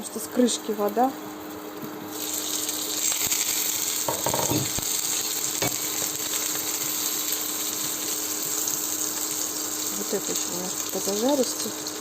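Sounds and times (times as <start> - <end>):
pancakes sizzling in oil: 0.6 - 12.0.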